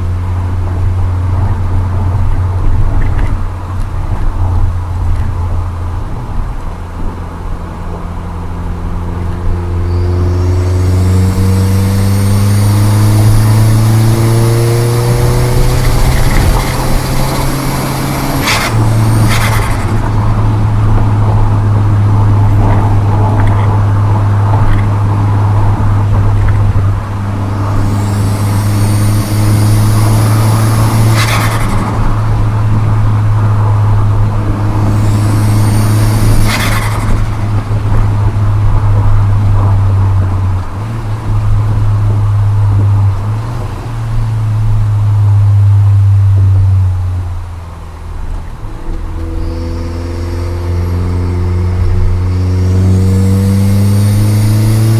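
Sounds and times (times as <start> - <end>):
car engine accelerating: 0.0 - 54.9
turbo flutter: 10.3 - 21.5, 25.5 - 39.9.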